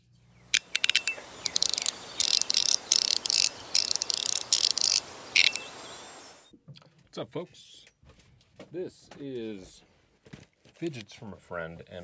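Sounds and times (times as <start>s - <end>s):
fidget toy rapid clicking: 0.6s - 6.4s.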